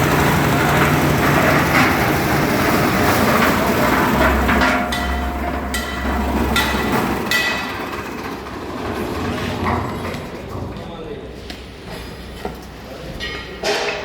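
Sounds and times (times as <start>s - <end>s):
concrete mixer rumbling: 0.0s - 14.0s
sharp metallic clanks: 0.6s - 8.1s.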